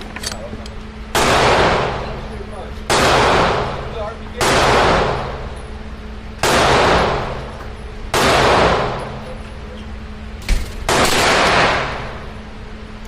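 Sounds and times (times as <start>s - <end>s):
gunshots with echoing tail: 1.1s - 2.2s, 2.9s - 5.5s, 6.4s - 9.2s, 10.8s - 12.3s.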